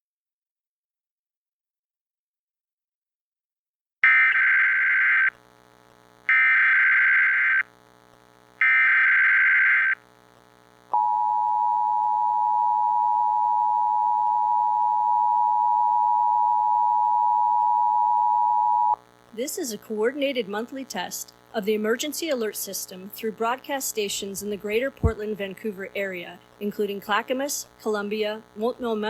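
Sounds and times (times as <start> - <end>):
warbling data bursts: 8.6 - 10.0.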